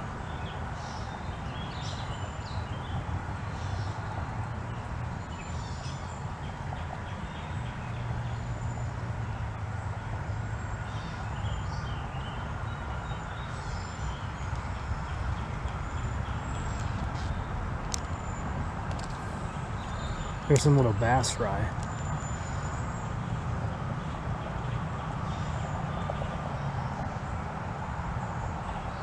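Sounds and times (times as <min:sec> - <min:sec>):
small birds chirping: 0:10.8 - 0:23.4
steady low rumble: 0:14.2 - 0:25.2.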